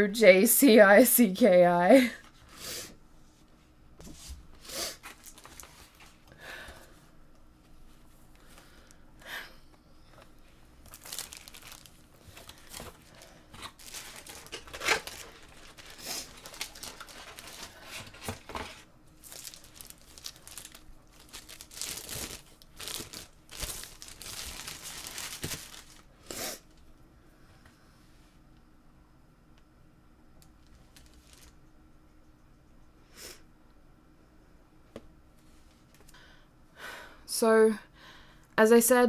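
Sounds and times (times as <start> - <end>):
packaging crinkling and tearing: 5.0 - 6.2, 10.8 - 26.1, 30.6 - 31.6.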